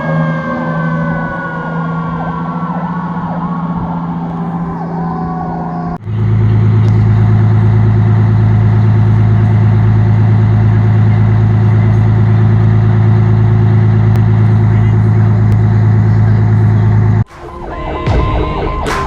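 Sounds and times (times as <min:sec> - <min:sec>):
siren: 0:00.0 - 0:13.2, 0:17.2 - 0:19.0
vehicle engine humming: 0:00.0 - 0:19.0.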